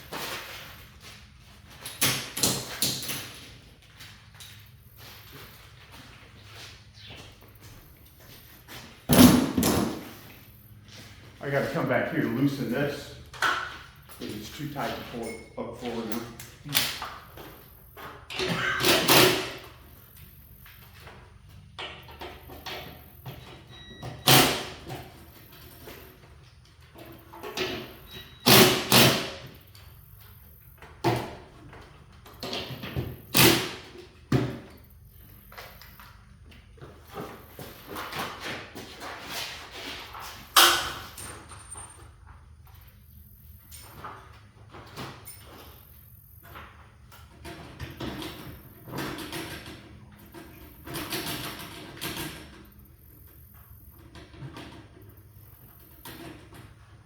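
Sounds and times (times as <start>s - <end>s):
garage door rattling and scraping: 7.9s - 20.1s, 20.9s - 30.0s, 36.2s - 42.8s, 43.7s - 57.0s
bangs on garage door hardware: 9.1s - 10.0s, 27.5s - 29.5s.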